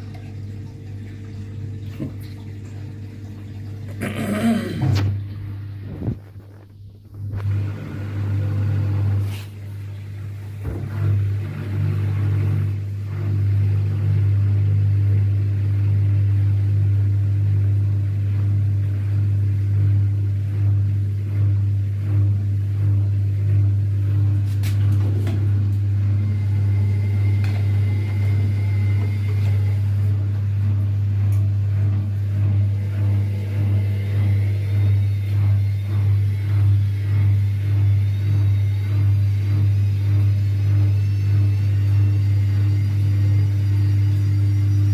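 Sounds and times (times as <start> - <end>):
washing machine spinning: 0.0 - 44.9.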